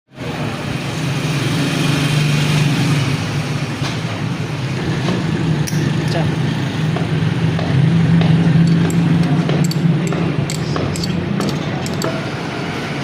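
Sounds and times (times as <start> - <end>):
vehicle engine running: 2.6 - 12.6.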